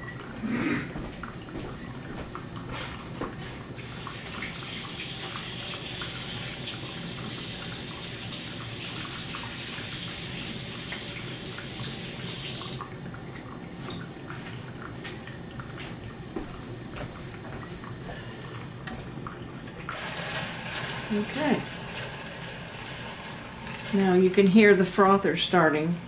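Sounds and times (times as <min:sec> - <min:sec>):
running water hissing: 0:03.8 - 0:12.8, 0:19.9 - 0:26.0.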